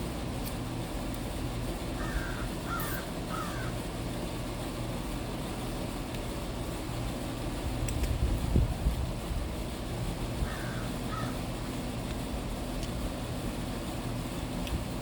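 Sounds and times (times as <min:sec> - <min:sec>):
steady low hum: 0:00.0 - 0:15.0
crow cawing: 0:02.0 - 0:03.8, 0:10.5 - 0:11.4.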